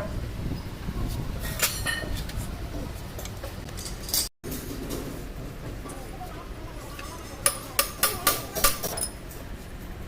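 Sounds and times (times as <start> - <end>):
low workshop rumble: 0.0 - 10.0
metal tools clinking: 3.2 - 4.3, 8.6 - 9.4.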